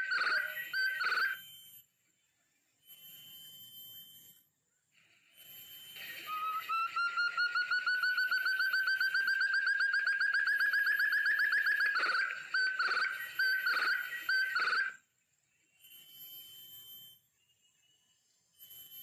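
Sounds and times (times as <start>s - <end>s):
partridge calling: 0.0s - 1.4s, 6.2s - 15.0s
faint thin whistle: 5.4s - 14.8s.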